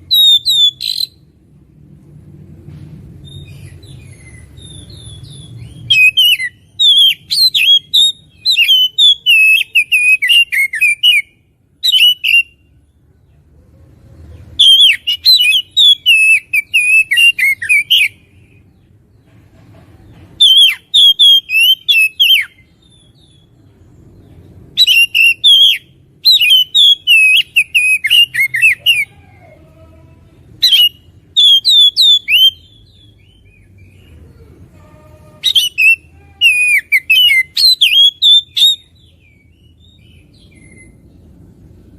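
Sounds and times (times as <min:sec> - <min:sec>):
songbird whistling phrases: 0:00.0 - 0:01.2, 0:03.2 - 0:12.6, 0:14.6 - 0:18.3, 0:20.4 - 0:23.5, 0:24.8 - 0:29.2, 0:30.6 - 0:34.0, 0:35.4 - 0:41.0.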